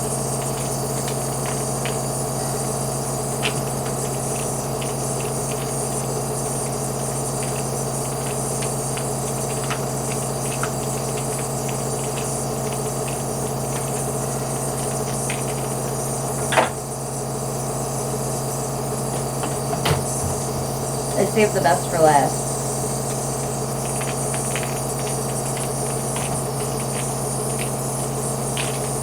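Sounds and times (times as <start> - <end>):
air compressor humming: 0.0 - 29.0
faint irregular ticks: 3.3 - 15.7, 23.8 - 29.0.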